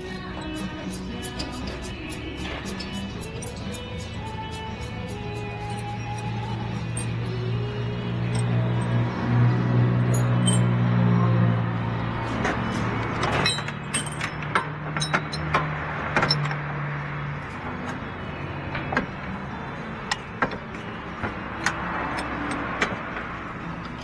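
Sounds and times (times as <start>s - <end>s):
metal tools clinking: 5.4s - 7.4s, 8.2s - 9.0s, 10.0s - 11.0s, 13.2s - 15.6s.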